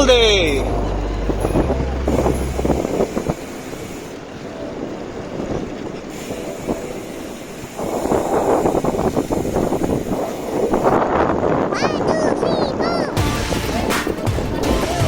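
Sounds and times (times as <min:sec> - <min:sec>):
road noise: 0:00.0 - 0:15.0
wind on microphone: 0:00.1 - 0:14.7.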